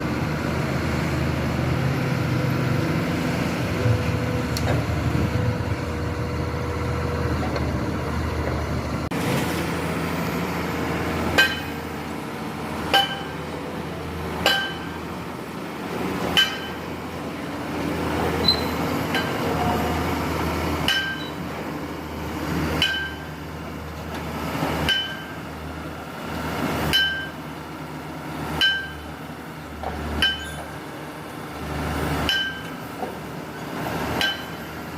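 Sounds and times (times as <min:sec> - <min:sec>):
excavator diesel engine running: 0:00.0 - 0:34.9
ringing metal clanks: 0:11.4 - 0:11.8, 0:12.9 - 0:13.4, 0:14.4 - 0:15.0, 0:16.3 - 0:16.8, 0:18.4 - 0:19.8, 0:20.9 - 0:21.4, 0:22.8 - 0:23.3, 0:26.9 - 0:27.4, 0:28.6 - 0:29.1, 0:30.2 - 0:30.7, 0:32.3 - 0:32.8, 0:34.2 - 0:34.7.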